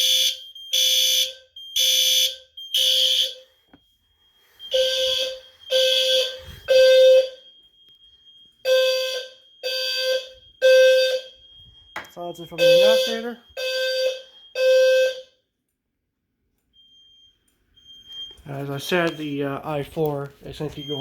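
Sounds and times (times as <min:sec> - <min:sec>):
fire alarm horn pulses: 0:00.0 - 0:04.0, 0:04.6 - 0:15.6.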